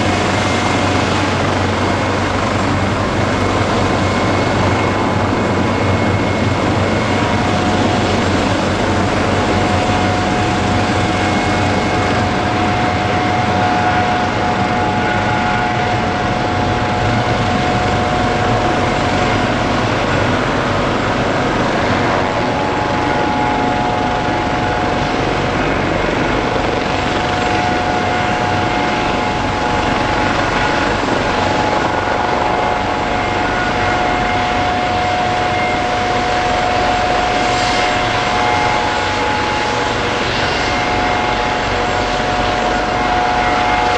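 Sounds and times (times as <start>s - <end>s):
helicopter rotor and engine: 0.0s - 43.9s
turbine whine: 0.0s - 43.9s.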